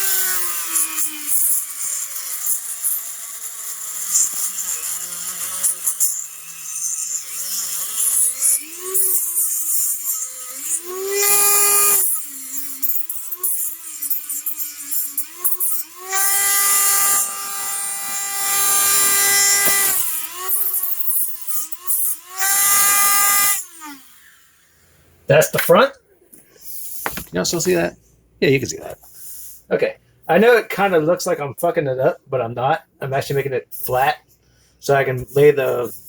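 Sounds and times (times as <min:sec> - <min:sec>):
rotary tool grinding plastic: 0:00.0 - 0:24.6, 0:26.5 - 0:27.9, 0:35.3 - 0:36.0
rotary tool whining: 0:00.0 - 0:24.8.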